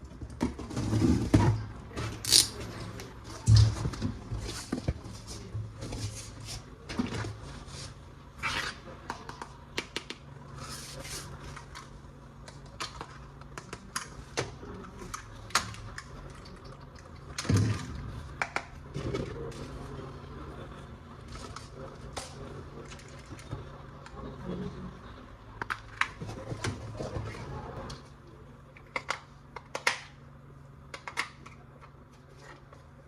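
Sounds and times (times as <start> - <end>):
packaging rustling: 2.3 - 2.6
plastic parts clicking: 2.3 - 2.6.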